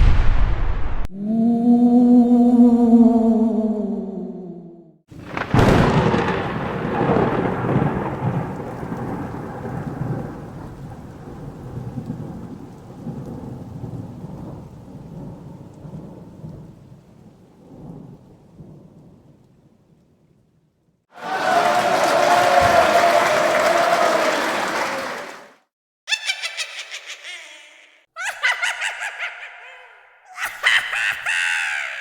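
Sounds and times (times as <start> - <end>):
thunder crack and rumble: 5.1 - 19.4.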